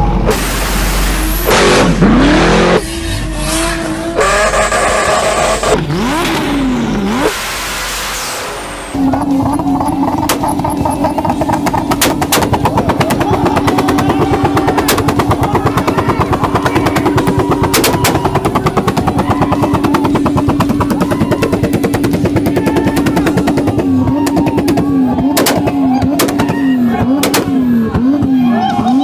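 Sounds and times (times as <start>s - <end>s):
exhaust bangs: 0.0s - 29.0s
exhaust pops and crackles: 9.0s - 28.9s.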